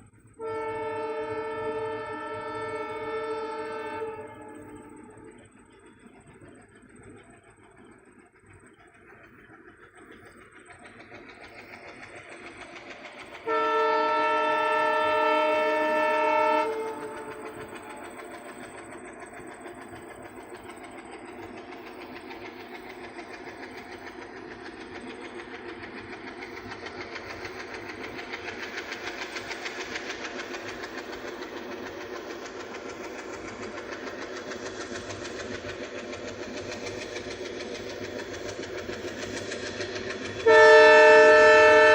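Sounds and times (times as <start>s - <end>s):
train rumbling past: 0.0s - 41.9s
train horn blast: 0.4s - 5.3s, 13.4s - 18.0s, 40.4s - 41.9s
wheels clacking over rails: 0.5s - 41.9s.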